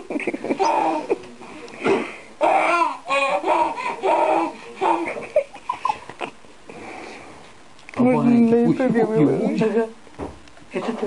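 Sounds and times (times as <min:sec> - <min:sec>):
baby laughing: 0:00.2 - 0:01.2, 0:02.4 - 0:06.4.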